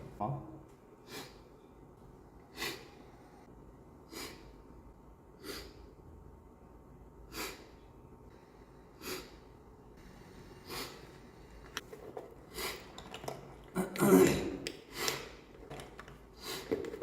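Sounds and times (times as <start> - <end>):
man sniffling: 5.4 - 6.0.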